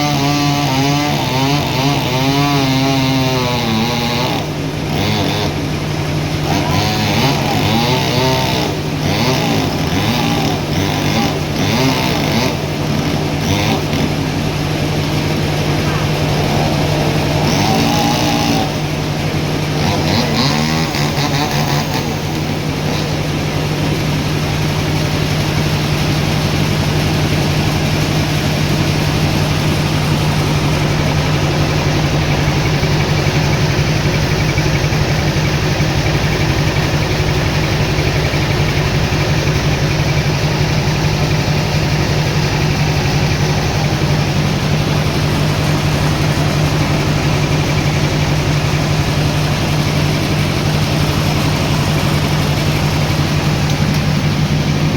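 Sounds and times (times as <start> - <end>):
sawmill machinery drone: 0.0 - 54.9
short pitched squeal: 14.7 - 20.2.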